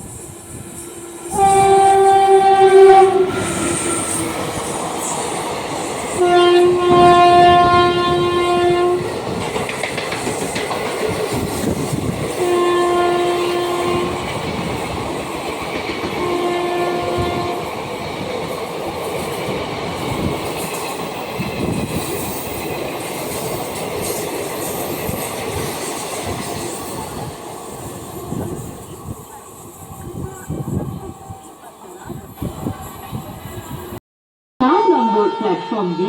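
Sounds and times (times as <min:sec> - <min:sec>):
train rushing and clattering: 0:00.0 - 0:34.0
train horn blasts: 0:00.4 - 0:04.5, 0:06.2 - 0:09.1, 0:12.4 - 0:14.3, 0:16.1 - 0:17.7, 0:28.1 - 0:28.8, 0:34.6 - 0:36.0.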